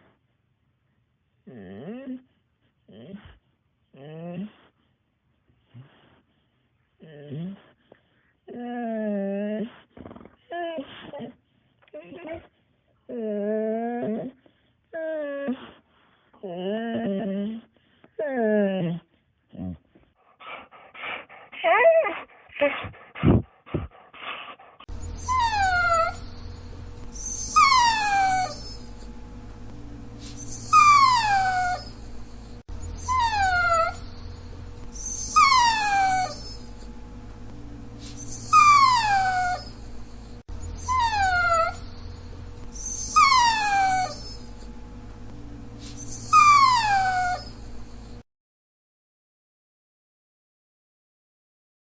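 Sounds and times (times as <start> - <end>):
dog whining and crying: 1.5 - 2.3, 4.0 - 4.7, 8.5 - 12.5, 13.1 - 15.8, 16.4 - 19.8, 21.6 - 24.0, 24.8 - 29.1, 30.2 - 36.9, 38.0 - 44.7, 45.8 - 48.2
faint steady hum: 24.9 - 48.2.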